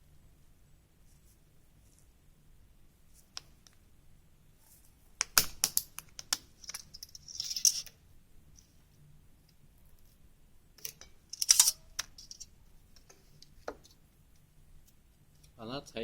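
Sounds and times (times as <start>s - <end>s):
scratching on metal sheet: 6.6s - 8.0s.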